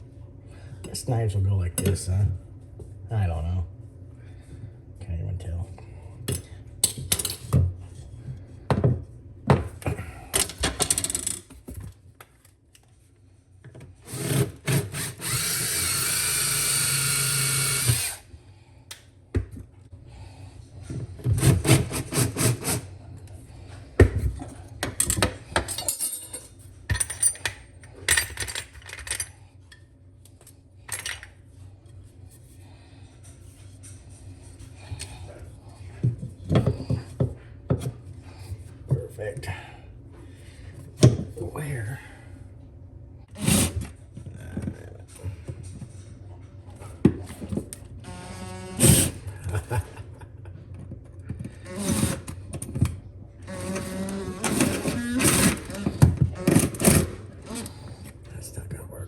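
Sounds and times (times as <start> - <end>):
power drill running: 14.1 - 18.2, 43.4 - 43.8, 48.0 - 49.2, 51.6 - 52.3, 53.4 - 57.8
clicks and knocks of tools: 24.8 - 31.4.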